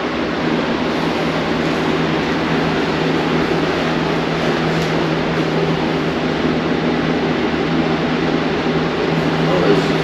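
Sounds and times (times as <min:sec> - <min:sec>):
steady mechanical hum: 0:00.0 - 0:10.0.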